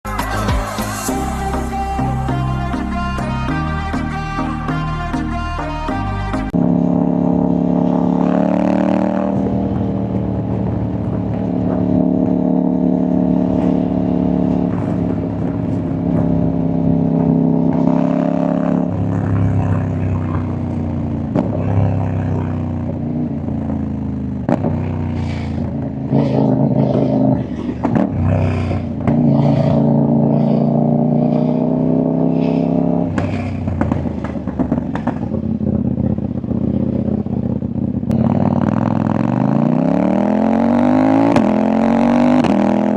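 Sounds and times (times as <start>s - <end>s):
motorcycle engine revving: 0.0s - 42.9s
exhaust pops and crackles: 9.3s - 12.7s, 14.4s - 18.0s, 21.2s - 23.1s, 24.4s - 29.3s, 33.1s - 38.8s.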